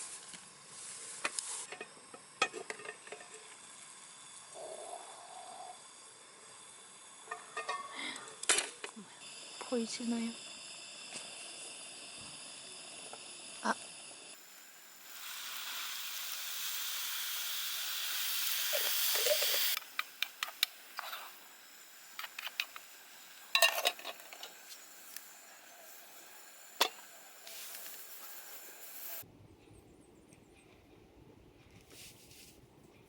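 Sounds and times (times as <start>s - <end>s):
camping stove hissing: 0.0s - 29.2s
crackles and ticks: 18.4s - 28.0s.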